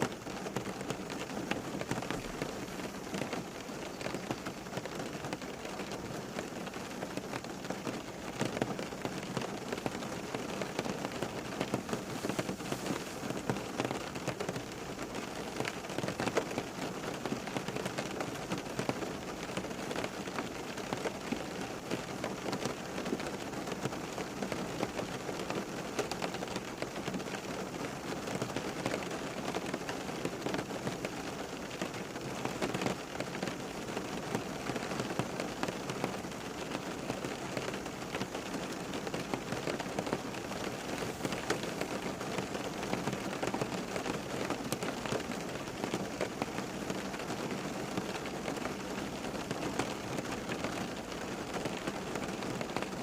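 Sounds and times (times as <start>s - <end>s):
rain falling on a surface: 0.0s - 53.0s.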